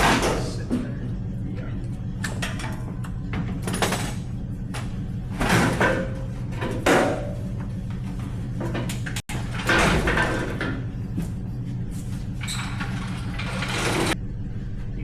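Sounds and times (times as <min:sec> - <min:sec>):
tools knocking and clanking: 0:02.2 - 0:10.9.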